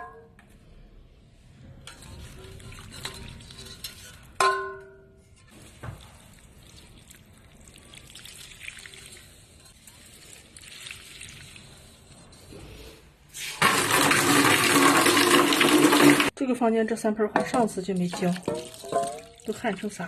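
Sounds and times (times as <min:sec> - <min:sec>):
water trickling: 0:17.9 - 0:20.0.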